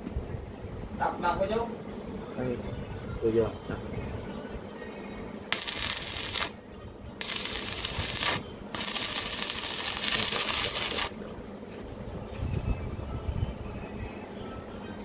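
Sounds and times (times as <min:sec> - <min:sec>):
welding arc crackling: 0:05.5 - 0:06.6, 0:07.2 - 0:11.2.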